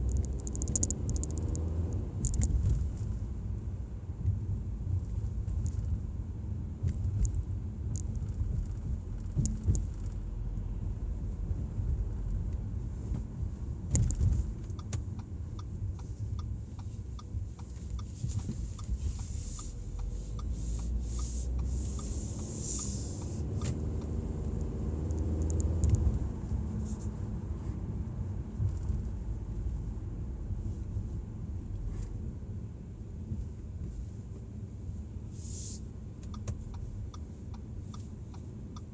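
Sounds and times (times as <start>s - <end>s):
regular ticking: 0.0s - 2.6s, 14.0s - 26.0s, 36.2s - 38.9s
car engine accelerating: 0.0s - 6.0s, 6.8s - 32.5s.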